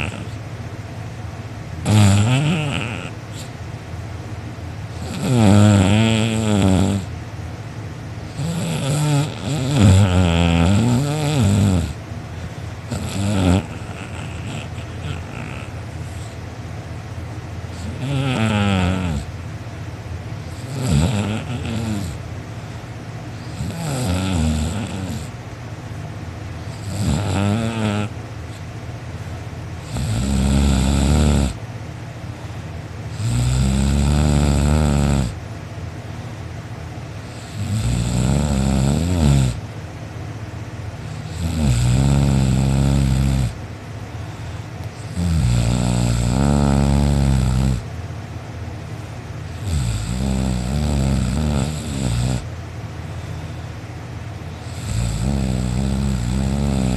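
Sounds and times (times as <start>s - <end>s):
person snoring loudly: 0.0s - 0.4s, 1.8s - 3.5s, 5.0s - 7.1s, 8.3s - 12.0s, 12.9s - 16.4s, 17.8s - 19.3s, 20.5s - 22.2s, 23.4s - 25.3s, 26.7s - 28.1s, 29.8s - 31.6s, 33.1s - 35.4s, 37.3s - 39.6s, 41.1s - 43.6s, 45.0s - 47.8s, 49.6s - 52.5s, 54.6s - 56.9s.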